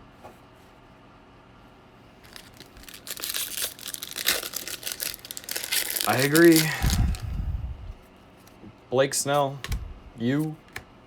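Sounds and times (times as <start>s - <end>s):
foil wrapper crinkling and tearing: 2.2s - 7.2s.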